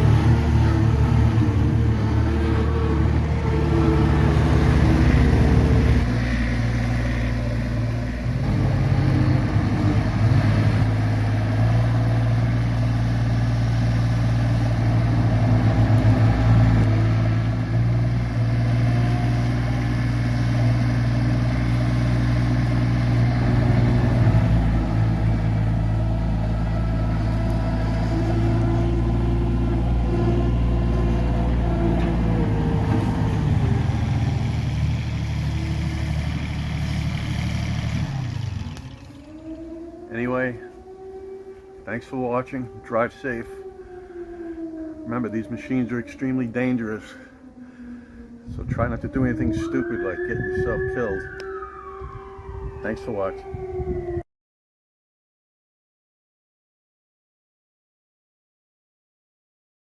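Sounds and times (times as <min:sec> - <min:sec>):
loader engine running: 0:00.0 - 0:41.3.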